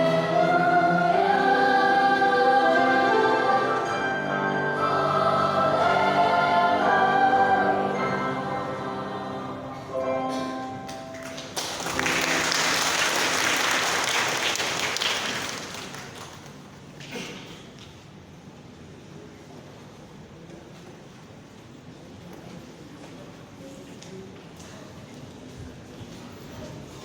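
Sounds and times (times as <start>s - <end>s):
children's choir singing: 0.0s - 13.9s
audience applause: 11.1s - 16.6s.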